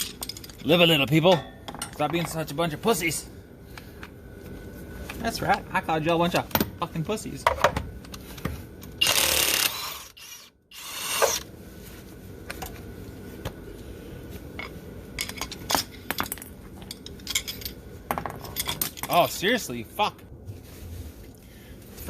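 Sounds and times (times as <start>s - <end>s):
cordless impact wrench running: 9.0s - 11.5s.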